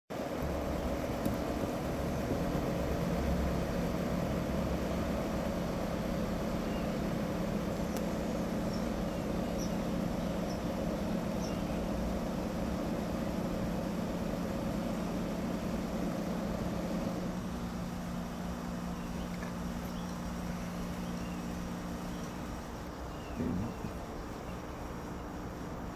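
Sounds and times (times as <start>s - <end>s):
steady mechanical hum: 0.1s - 25.9s
faint bird chirps: 6.6s - 7.1s, 7.8s - 9.8s, 18.9s - 25.2s.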